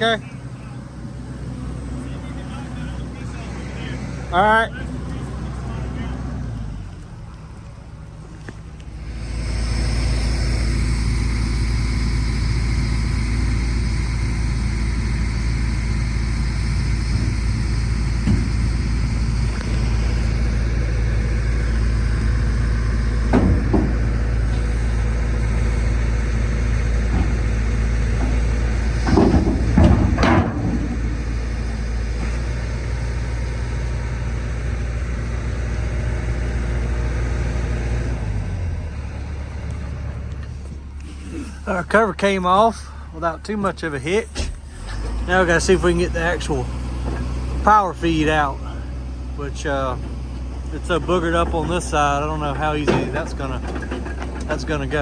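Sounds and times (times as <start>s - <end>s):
heavy machine engine running: 0.0s - 55.0s
loud knocks: 17.1s - 24.8s, 26.4s - 32.4s
metallic clanks: 26.4s - 32.4s, 50.0s - 55.0s.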